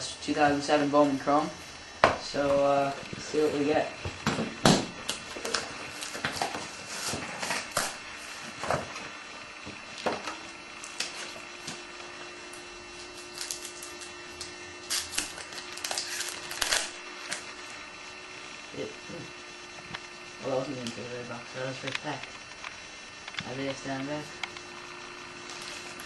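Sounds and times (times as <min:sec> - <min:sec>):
faint electrical hum: 0:00.0 - 0:26.0
cardboard and foil wrapper crinkling: 0:05.0 - 0:08.5, 0:12.5 - 0:17.6, 0:25.4 - 0:26.0.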